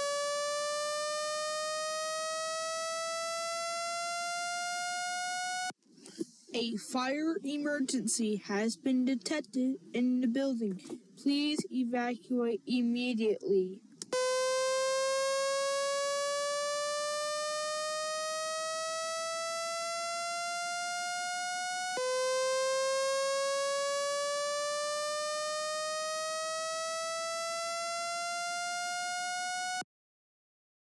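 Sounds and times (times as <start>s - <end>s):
fire alarm sweeping tone: 0.0s - 5.7s, 14.1s - 29.8s.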